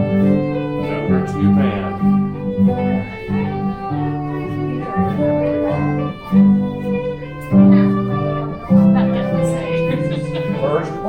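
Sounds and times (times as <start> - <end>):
fiddle: 0.0 - 11.0
plucked strings: 0.0 - 11.0.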